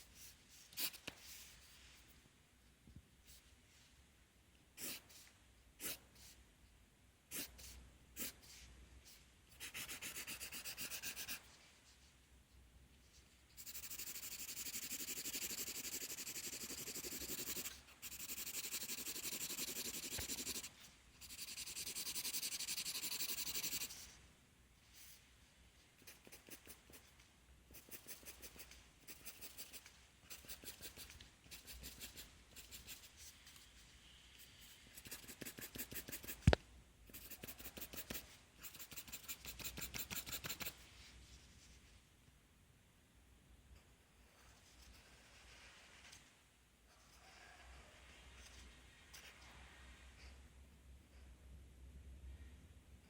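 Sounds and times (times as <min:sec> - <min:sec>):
pencil writing on paper: 0:04.8 - 0:05.2, 0:09.6 - 0:11.4, 0:13.6 - 0:24.0, 0:27.7 - 0:33.2, 0:37.1 - 0:40.7.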